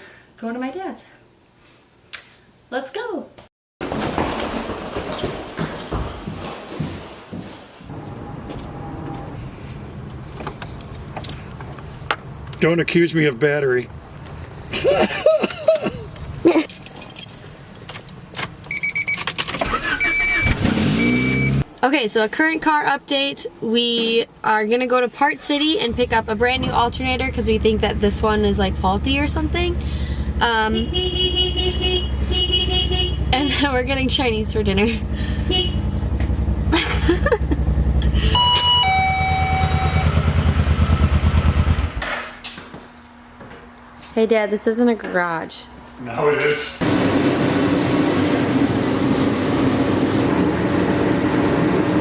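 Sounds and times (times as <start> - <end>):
keys jangling: 16.6 - 18.0
short electronic beeps: 18.7 - 19.2, 19.8 - 21.6, 38.4 - 40.3
vehicle engine running: 25.8 - 42.0
electronic chime beeps: 38.4 - 40.2.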